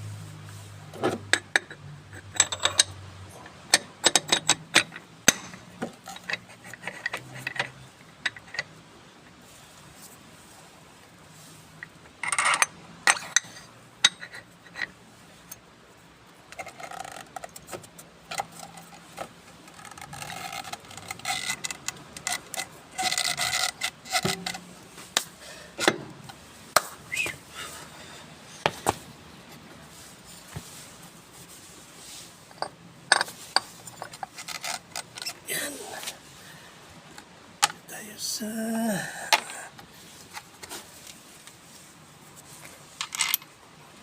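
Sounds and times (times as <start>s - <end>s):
sharp clicks and knocks: 1.0s - 8.8s.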